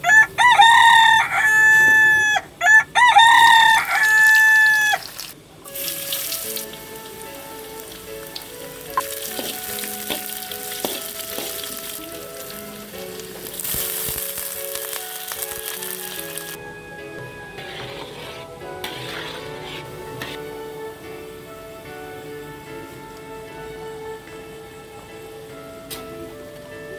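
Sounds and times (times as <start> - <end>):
rooster crowing: 0.0 - 5.2
soft music: 0.0 - 26.9
food sizzling in hot oil: 3.2 - 16.6.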